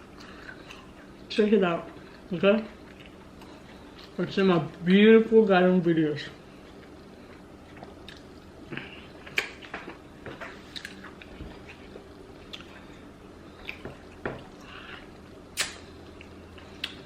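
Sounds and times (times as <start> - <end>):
mouth smacking and chewing: 6.7 - 9.7, 15.6 - 17.0.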